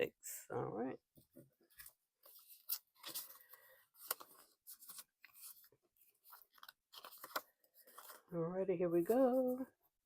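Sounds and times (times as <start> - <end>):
paper rustling and crinkling: 1.6 - 8.3.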